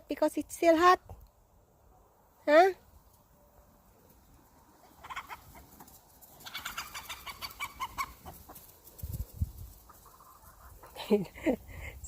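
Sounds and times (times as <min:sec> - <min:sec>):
chickens clucking: 0:04.0 - 0:11.4.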